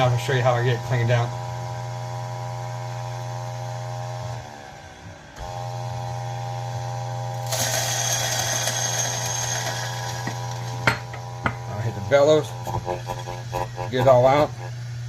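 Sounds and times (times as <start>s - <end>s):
coffee grinder motor hum: 0.0s - 15.0s
beans grinding harshly: 7.4s - 15.0s.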